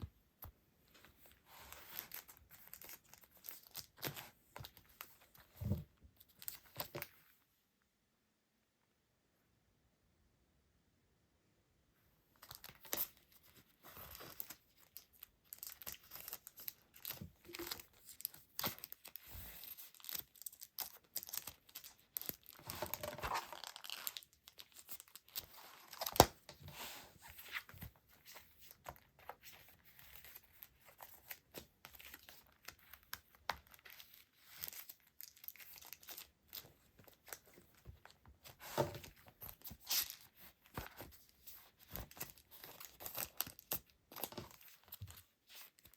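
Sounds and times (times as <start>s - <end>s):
packaging crinkling and rustling: 12.4s - 26.5s.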